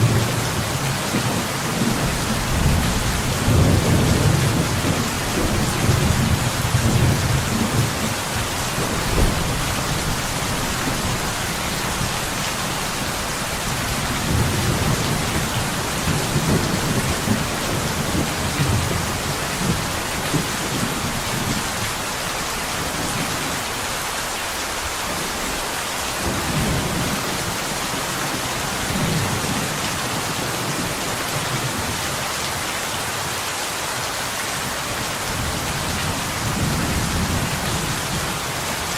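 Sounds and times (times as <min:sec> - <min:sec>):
rolling thunder: 0:00.0 - 0:21.9
rain on a window: 0:00.0 - 0:38.9.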